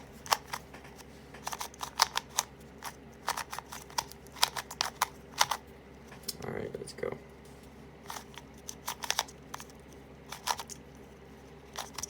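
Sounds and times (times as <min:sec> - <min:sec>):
puzzle cube clicking: 0:00.2 - 0:05.6, 0:08.1 - 0:10.8.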